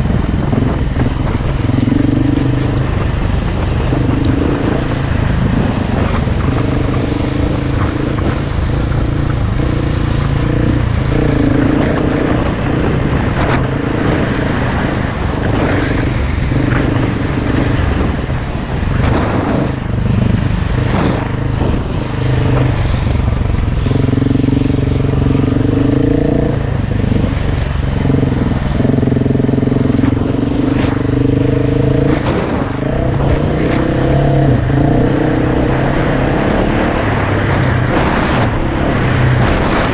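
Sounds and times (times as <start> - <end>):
dirt bike engine revving: 19.0 - 39.9.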